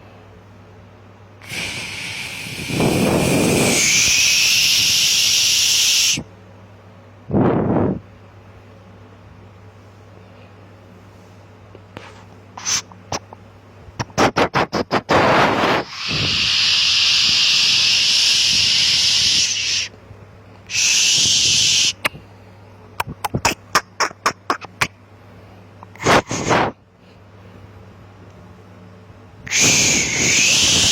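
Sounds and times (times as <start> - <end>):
constant low hum: 0.0 - 30.9
steady hiss: 1.4 - 6.2, 15.1 - 19.9.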